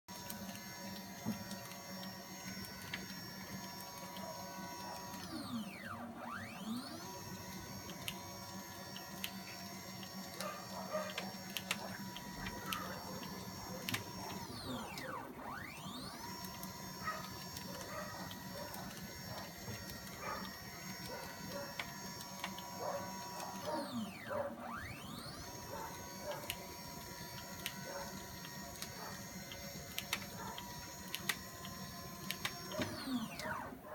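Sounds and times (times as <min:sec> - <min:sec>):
machine drive motors whining: 0:00.1 - 0:33.9
steady machine hum: 0:00.1 - 0:33.9
scattered ticks: 0:07.8 - 0:15.1.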